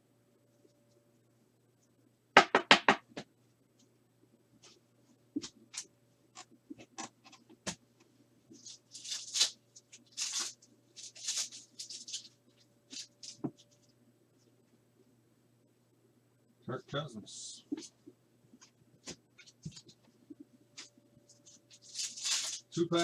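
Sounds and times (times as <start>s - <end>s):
foil pack rustling: 8.6s - 13.4s, 21.4s - 23.0s.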